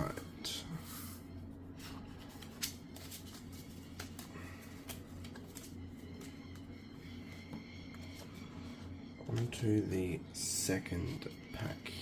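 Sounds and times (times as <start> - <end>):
low steady hum: 0.0 - 12.0
cards rustling: 1.8 - 6.7.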